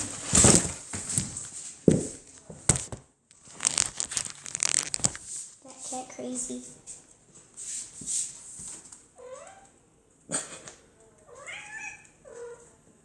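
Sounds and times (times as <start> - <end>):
cat meowing: 11.3 - 12.7.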